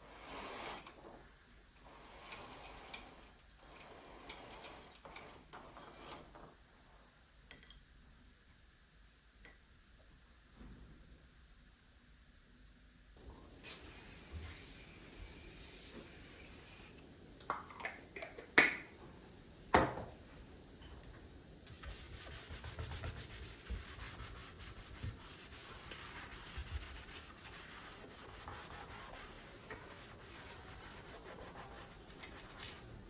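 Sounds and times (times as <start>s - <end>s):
rubbing and wiping a surface: 0.0s - 6.3s, 21.7s - 33.0s.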